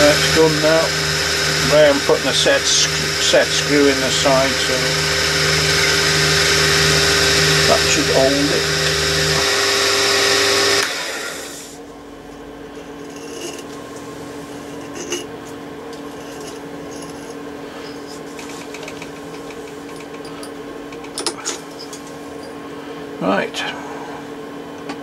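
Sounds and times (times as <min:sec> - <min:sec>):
machine motor spinning down: 0:00.0 - 0:11.8
steady low hum: 0:00.0 - 0:25.0.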